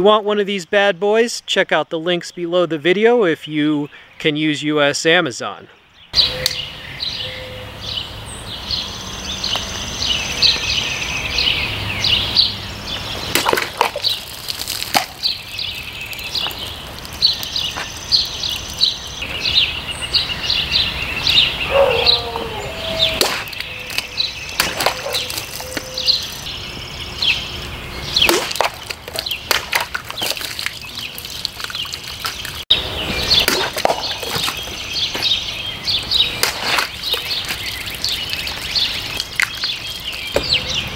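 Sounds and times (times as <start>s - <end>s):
birds chirping: 0.0s - 40.9s
knife slashing through bottles: 13.2s - 16.3s, 28.2s - 32.6s, 33.4s - 34.7s, 36.4s - 40.3s.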